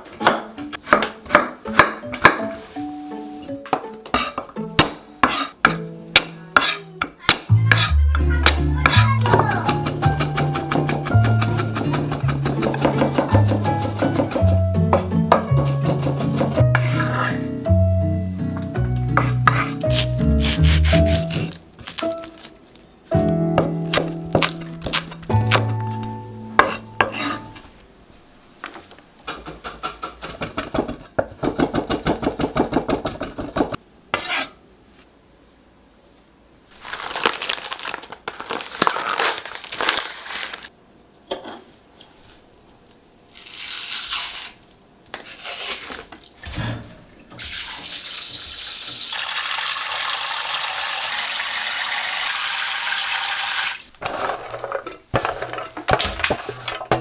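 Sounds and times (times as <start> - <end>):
knife chopping on cutting board: 0.2 - 2.4, 9.3 - 17.4, 19.2 - 21.5
kitchen tap running: 47.3 - 53.8
dishes clattering: 54.0 - 57.0.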